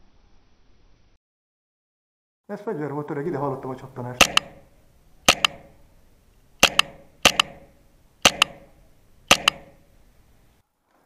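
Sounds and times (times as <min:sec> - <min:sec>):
bb hitting replica gun: 0:04.2 - 0:04.7, 0:06.6 - 0:09.9.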